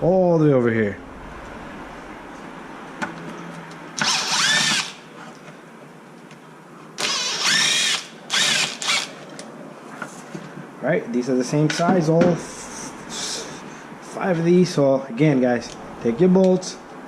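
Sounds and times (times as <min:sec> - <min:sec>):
power driver motor whine: 0:04.0 - 0:05.0, 0:07.0 - 0:09.2.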